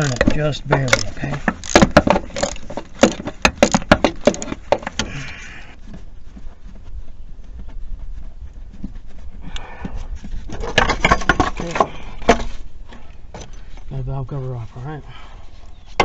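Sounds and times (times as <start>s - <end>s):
metal knocks: 0.0s - 5.1s.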